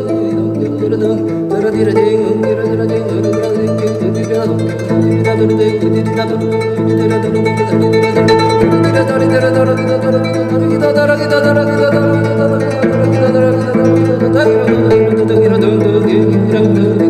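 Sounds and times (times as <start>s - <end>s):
plucked string music: 0.0s - 17.0s.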